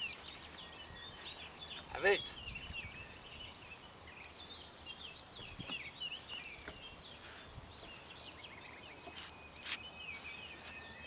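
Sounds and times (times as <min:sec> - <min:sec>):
birds singing: 0:00.0 - 0:11.0
faint high ticks: 0:02.8 - 0:04.4, 0:05.1 - 0:10.2.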